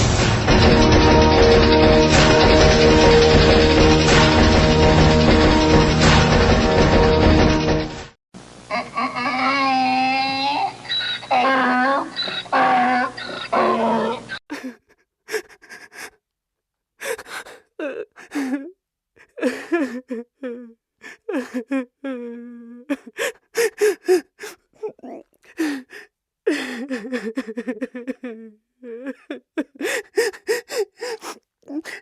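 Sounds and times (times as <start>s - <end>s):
person sobbing and whimpering: 14.5s - 16.2s, 17.0s - 32.0s
person wailing cry: 19.4s - 32.0s.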